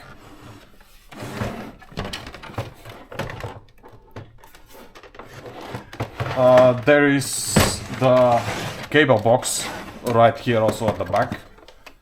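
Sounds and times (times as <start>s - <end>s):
quiet rubbing: 4.3s - 11.6s.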